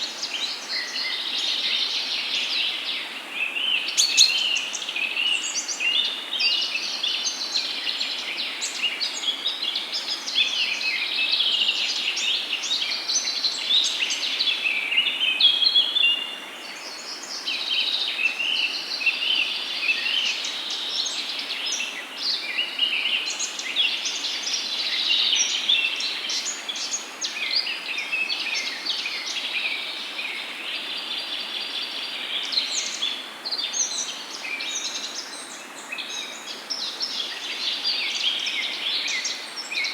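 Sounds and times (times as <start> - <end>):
small birds chirping and singing: 0.0 - 39.9.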